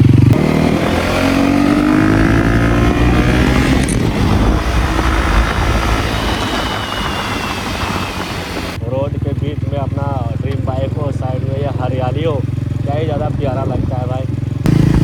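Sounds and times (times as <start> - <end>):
motorcycle engine accelerating: 0.0 - 15.0
rushing noise: 0.4 - 8.8.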